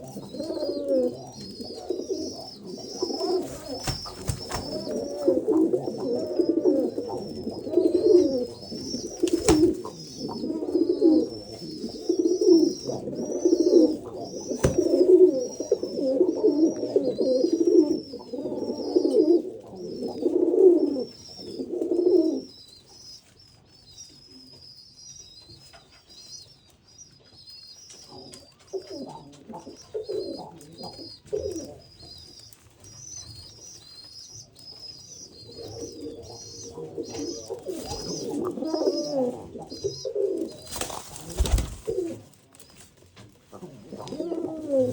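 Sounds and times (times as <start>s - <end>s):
pigeons cooing: 0.0s - 23.2s, 27.8s - 44.9s
high chirping: 1.7s - 5.3s.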